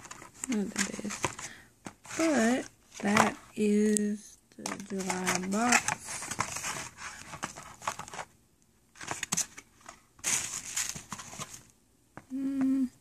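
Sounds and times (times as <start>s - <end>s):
packaging crinkling and rustling: 0.0s - 3.4s, 4.6s - 8.3s, 8.9s - 11.7s.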